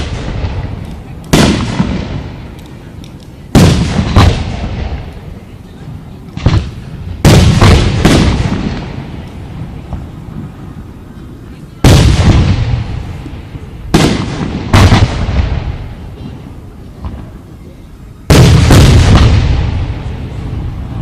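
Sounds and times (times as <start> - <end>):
firework shells booming: 0.0 - 5.2, 6.3 - 10.6, 11.8 - 17.4, 18.3 - 21.0.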